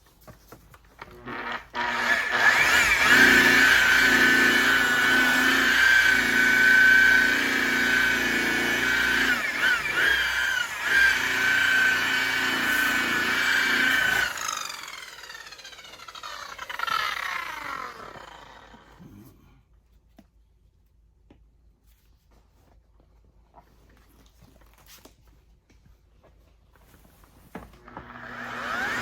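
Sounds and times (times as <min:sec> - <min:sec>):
electric polisher motor whining: 0:01.2 - 0:19.0, 0:27.8 - 0:29.0.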